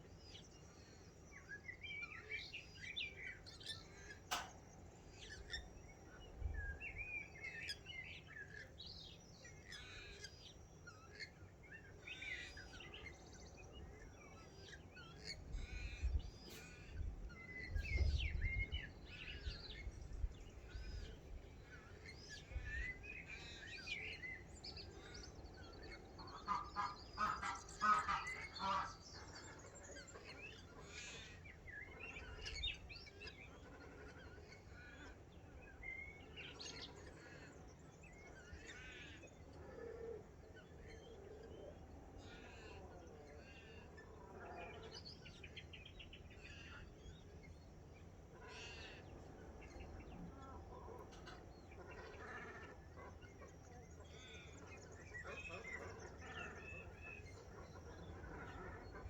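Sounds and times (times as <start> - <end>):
small birds chirping: 0.0 - 59.0
waterfowl honking: 26.3 - 29.0.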